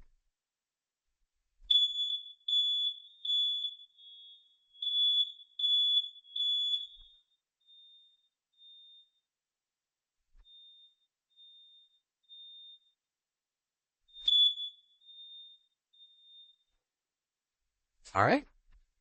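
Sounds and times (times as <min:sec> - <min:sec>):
smoke alarm beeping: 0:01.7 - 0:09.3, 0:10.4 - 0:13.1, 0:14.1 - 0:16.8.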